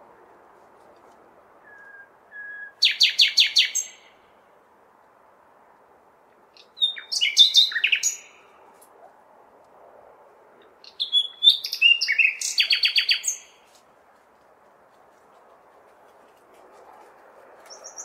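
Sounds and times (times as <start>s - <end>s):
low hum of city noise: 0.0s - 18.0s
nightingale singing: 1.6s - 4.2s, 6.6s - 8.4s, 10.8s - 13.6s, 17.7s - 18.0s.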